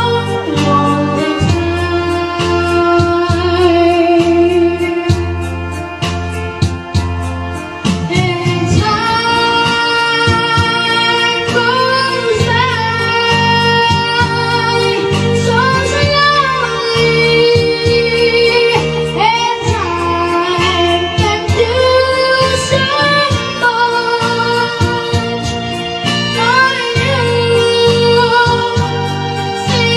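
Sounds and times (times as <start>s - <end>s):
instrumental backing with bass: 0.0s - 29.9s
high voice singing held notes: 7.5s - 28.8s.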